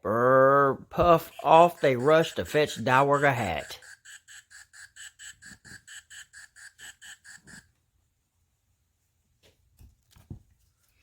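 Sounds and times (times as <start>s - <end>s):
fast electronic beeping tones: 1.2s - 7.6s.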